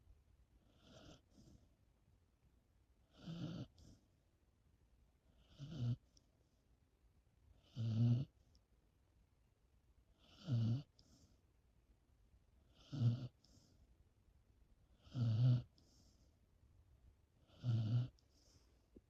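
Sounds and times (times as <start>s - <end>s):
pet snoring: 0.6s - 1.6s, 3.1s - 4.0s, 5.3s - 6.1s, 7.6s - 8.4s, 10.2s - 11.2s, 12.7s - 13.7s, 14.9s - 16.0s, 17.4s - 18.6s.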